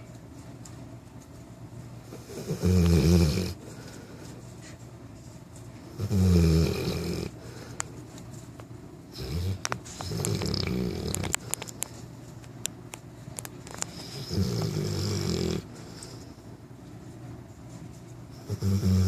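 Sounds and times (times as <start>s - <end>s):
puppy snoring: 2.1s - 3.6s, 6.0s - 7.6s, 9.1s - 11.6s, 13.8s - 16.3s, 18.4s - 19.0s.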